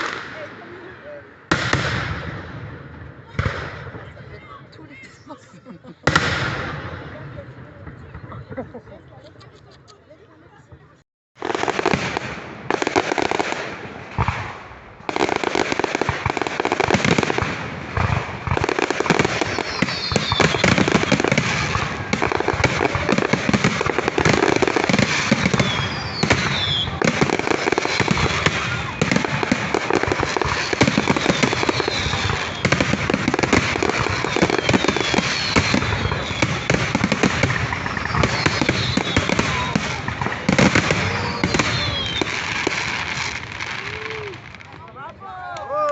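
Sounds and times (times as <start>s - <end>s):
fireworks bangs and crackling: 0.0s - 4.6s, 6.0s - 8.8s, 11.4s - 45.4s
falling fireworks whistles: 15.1s - 44.7s.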